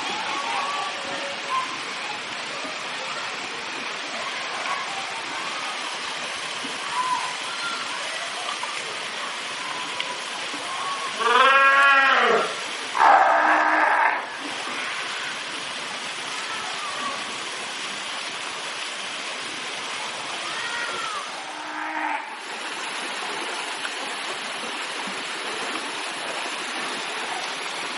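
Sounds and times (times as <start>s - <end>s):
murmur of voices: 0.0s - 11.6s
seals bleating calls: 11.2s - 14.3s, 20.6s - 22.4s.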